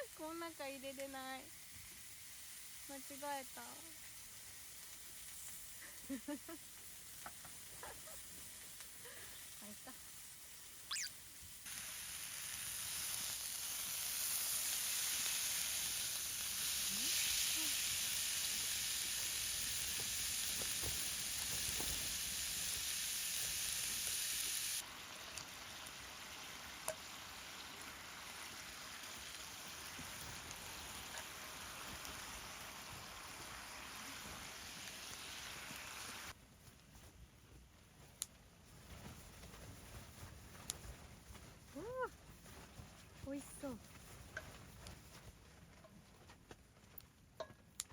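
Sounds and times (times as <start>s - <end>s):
food sizzling in a pan: 0.0s - 36.4s.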